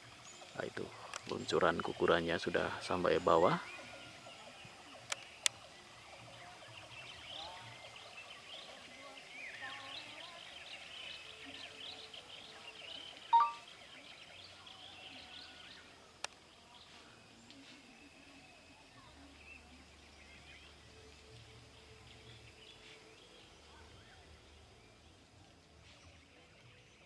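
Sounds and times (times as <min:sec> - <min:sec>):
bird chirps: 0:06.5 - 0:15.0.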